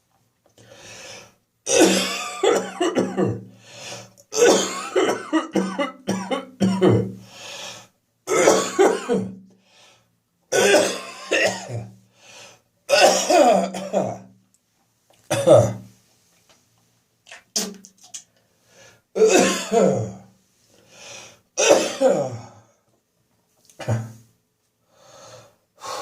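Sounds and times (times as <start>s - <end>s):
person coughing: 1.7s - 3.5s, 4.3s - 7.2s, 8.3s - 9.4s, 10.5s - 11.9s, 12.9s - 14.3s, 15.3s - 15.8s, 19.2s - 20.3s, 21.6s - 22.5s, 23.8s - 24.2s
throat clearing: 23.8s - 24.2s.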